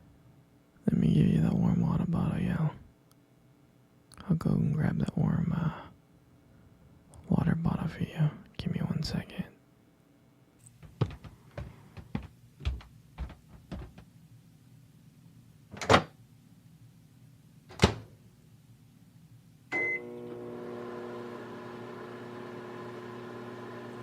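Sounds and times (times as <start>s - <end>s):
soft knocks: 10.8s - 14.1s
microwave door clacks: 17.7s - 18.1s
microwave beep: 19.7s - 20.5s
microwave humming: 19.7s - 24.0s.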